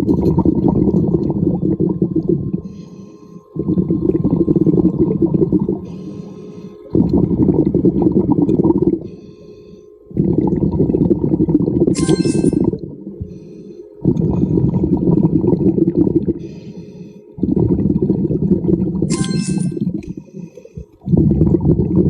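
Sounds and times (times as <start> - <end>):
bubbling exhaled air: 0.0 - 22.0
faint high regulator ringing: 1.5 - 15.8, 19.0 - 20.2.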